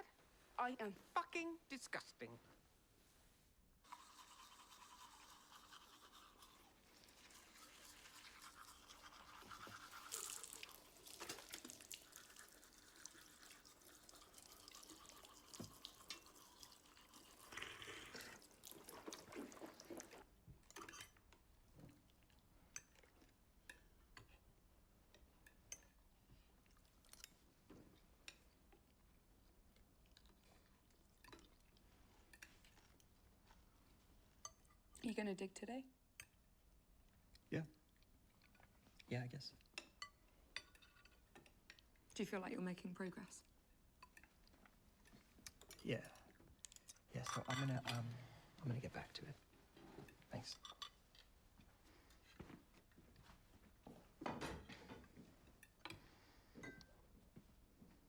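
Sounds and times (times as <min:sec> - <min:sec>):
toothbrush scrubbing teeth: 0:03.8 - 0:20.3.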